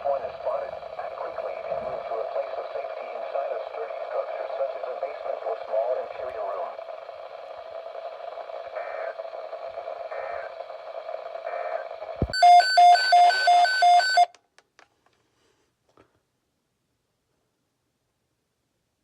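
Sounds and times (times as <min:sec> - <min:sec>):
radio static hiss: 0:00.0 - 0:12.3
hum: 0:00.0 - 0:12.4
electronic alert beeps: 0:12.3 - 0:14.3.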